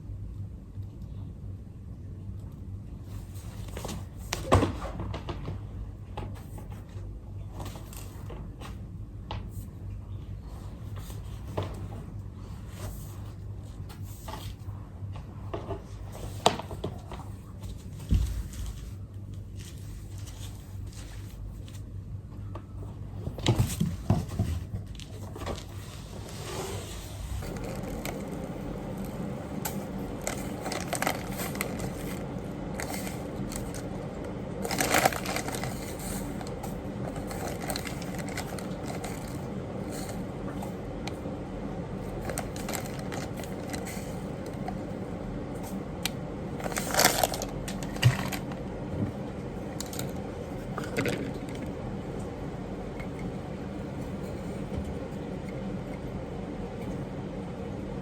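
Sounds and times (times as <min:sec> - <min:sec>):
low mechanical hum: 0:00.0 - 0:58.0.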